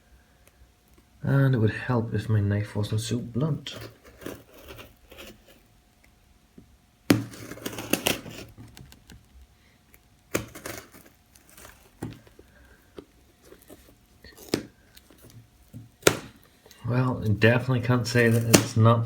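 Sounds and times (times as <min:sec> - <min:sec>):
knife cutting cardboard parcel: 0:03.5 - 0:05.7, 0:07.1 - 0:08.8, 0:10.3 - 0:18.8.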